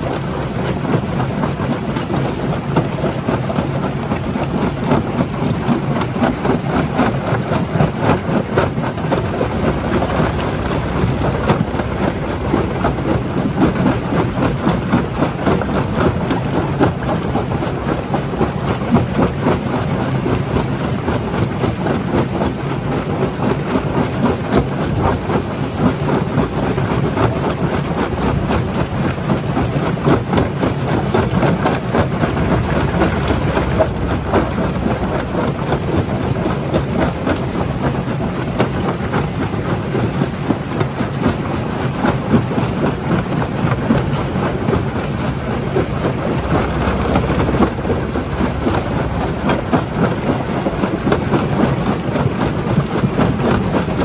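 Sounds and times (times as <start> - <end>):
stone crusher running: 8.3 - 18.4.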